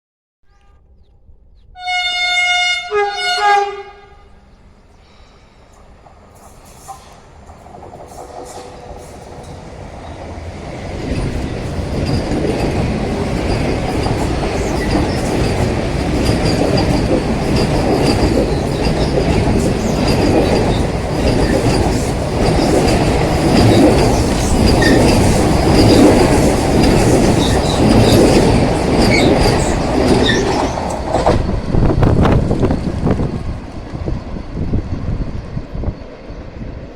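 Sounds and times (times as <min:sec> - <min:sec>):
train coaches rumbling: 0:02.8 - 0:36.9
wheels clattering over rail joints: 0:06.0 - 0:34.0.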